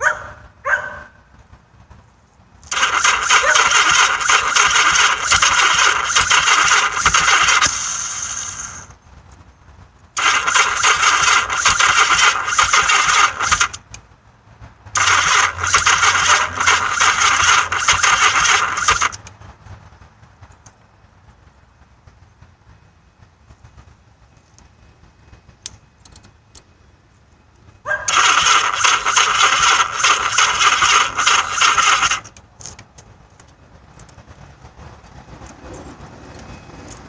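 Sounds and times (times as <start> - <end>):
electric starter cranking engine: 2.7 - 9.0, 10.2 - 13.8, 15.0 - 19.2, 28.1 - 32.4.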